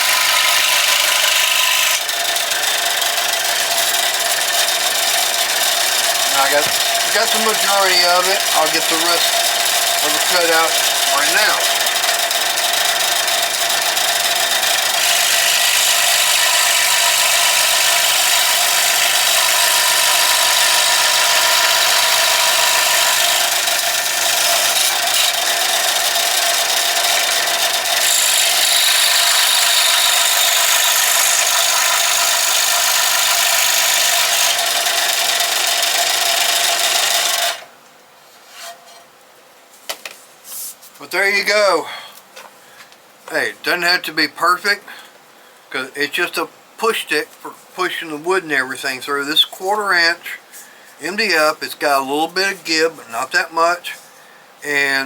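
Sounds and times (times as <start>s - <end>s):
power saw cutting wood: 0.0s - 37.7s, 49.1s - 54.0s.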